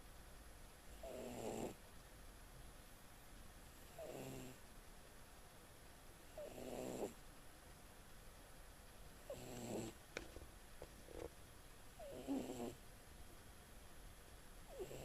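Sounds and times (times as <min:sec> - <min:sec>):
pet snoring: 0:00.9 - 0:01.8, 0:03.9 - 0:04.6, 0:06.3 - 0:07.2, 0:09.3 - 0:10.0, 0:12.0 - 0:12.8, 0:14.7 - 0:15.0.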